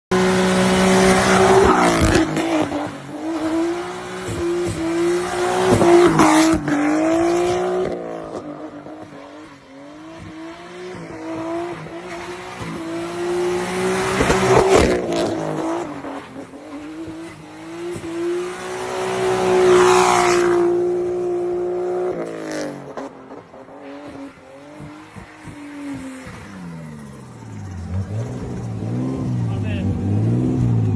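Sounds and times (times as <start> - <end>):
car engine revving: 0.1 - 30.9.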